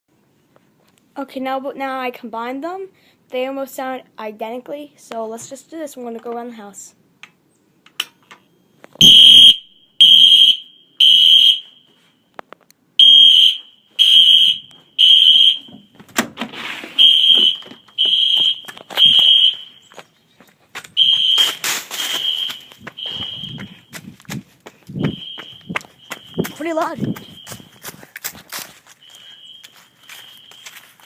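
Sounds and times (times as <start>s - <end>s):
smoke alarm beeping: 9.0s - 12.0s, 13.0s - 15.8s, 17.0s - 19.9s, 21.0s - 23.9s, 25.0s - 27.9s, 29.0s - 30.9s
footstep thumps: 14.6s - 31.0s.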